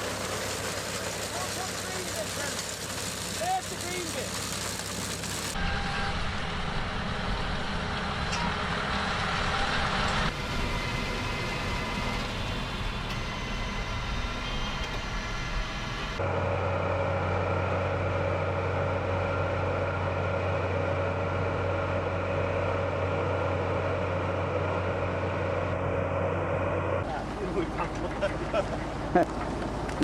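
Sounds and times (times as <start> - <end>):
farm machinery engine drone: 0.0 - 30.0
machine deep steady hum: 5.5 - 29.2.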